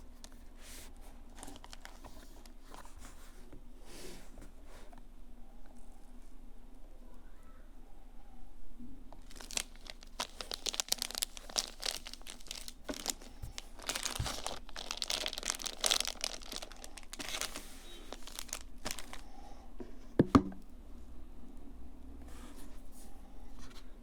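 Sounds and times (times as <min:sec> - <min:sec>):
packaging crinkling and rustling: 0:00.0 - 0:03.3, 0:09.2 - 0:19.3.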